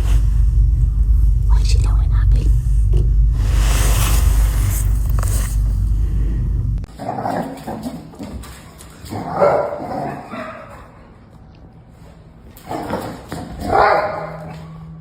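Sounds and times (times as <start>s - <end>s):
dog barking and whining: 9.1s - 11.0s, 13.6s - 14.8s.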